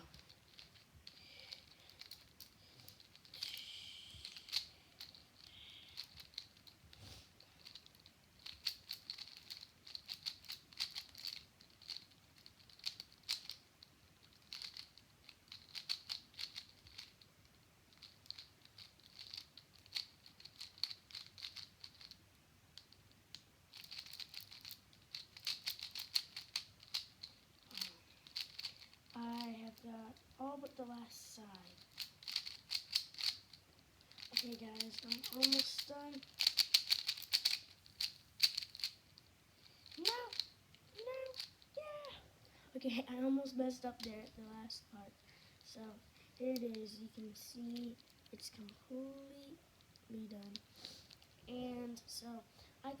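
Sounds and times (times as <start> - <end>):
puzzle cube layers clicking: 7.6 - 13.6, 23.7 - 29.5, 31.7 - 33.5, 34.1 - 39.0, 39.8 - 42.2.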